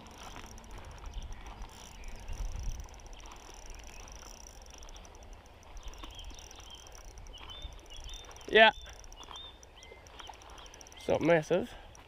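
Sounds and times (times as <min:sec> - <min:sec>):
wind on microphone: 0:00.0 - 0:08.4
fishing reel clicking: 0:00.0 - 0:12.0.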